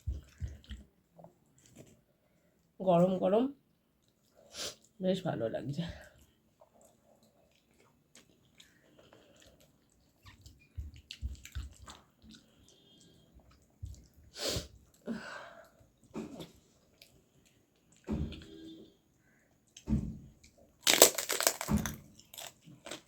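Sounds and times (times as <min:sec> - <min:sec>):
chewing and mouth clicks: 0:00.0 - 0:01.8, 0:04.0 - 0:05.0, 0:06.1 - 0:14.2, 0:16.3 - 0:18.4.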